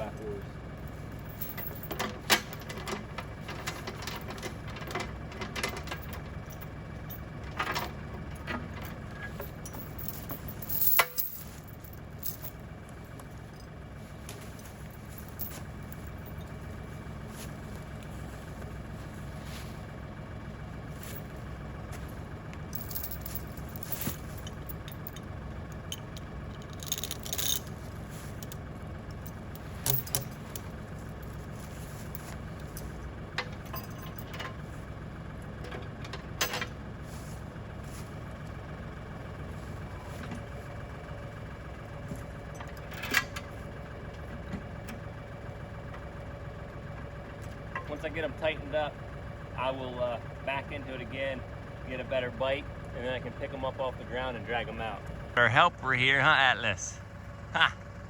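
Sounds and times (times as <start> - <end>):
tractor diesel engine idling: 0.0 - 58.0
metal chain clinking and rattling: 0.8 - 13.7, 14.4 - 16.9, 22.7 - 28.6, 29.2 - 34.6.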